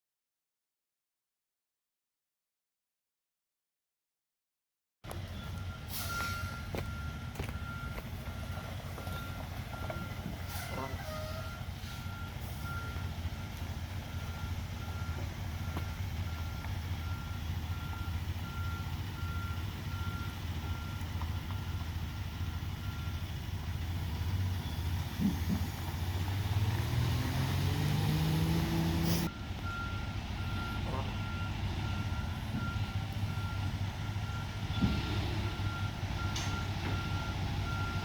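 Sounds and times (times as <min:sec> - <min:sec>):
diesel engine revving: 0:05.1 - 0:38.0
backup alarm beeping: 0:05.4 - 0:23.3, 0:29.2 - 0:38.0.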